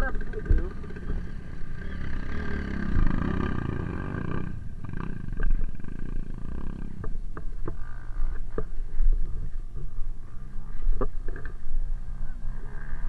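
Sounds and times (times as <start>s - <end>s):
motorcycle engine rumbling: 0.0s - 13.0s.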